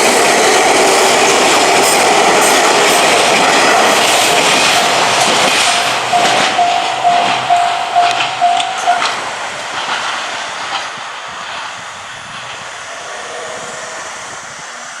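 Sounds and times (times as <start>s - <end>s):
wheels clacking over rail joints: 0.0s - 14.0s
train rumbling past: 0.0s - 15.0s
level-crossing warning bell: 2.4s - 10.7s.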